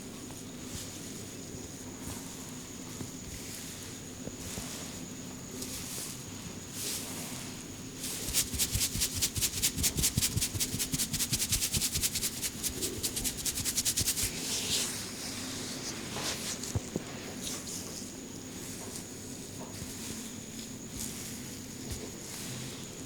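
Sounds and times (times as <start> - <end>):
hands rubbing swishes: 8.0 - 16.7
rapid rhythmic hand strikes: 8.2 - 14.3.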